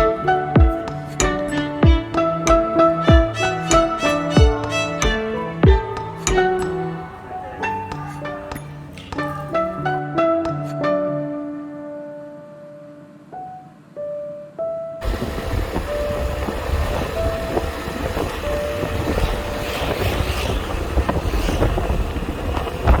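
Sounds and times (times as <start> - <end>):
soft piano music: 0.0 - 23.0
loud low rumbling noise: 15.0 - 19.6.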